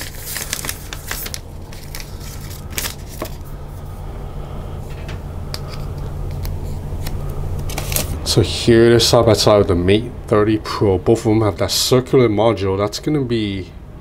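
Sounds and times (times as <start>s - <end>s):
cardboard packaging handled: 0.0s - 3.5s, 7.6s - 8.2s
steady low hum: 0.0s - 14.0s.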